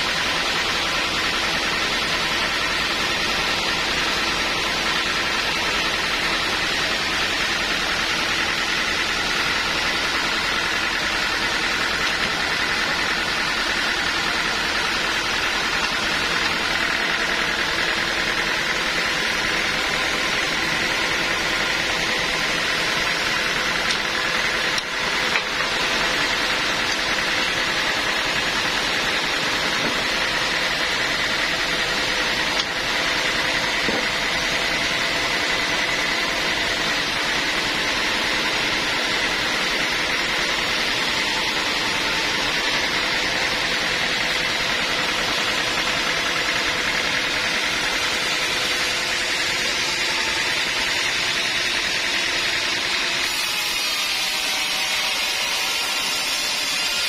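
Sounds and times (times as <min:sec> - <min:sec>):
sawmill machinery drone: 0:00.0 - 0:57.0.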